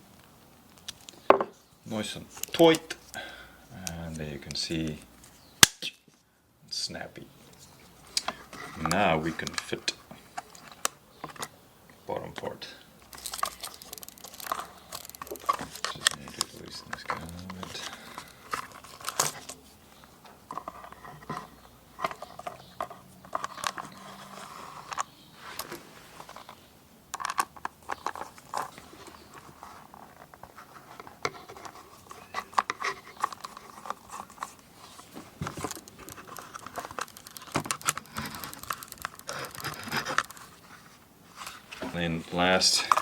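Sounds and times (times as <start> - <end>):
small plastic and metal clicks: 35.4 - 40.4.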